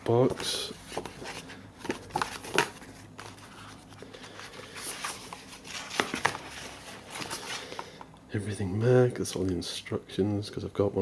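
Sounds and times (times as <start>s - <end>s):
paper rustling: 0.1s - 7.8s.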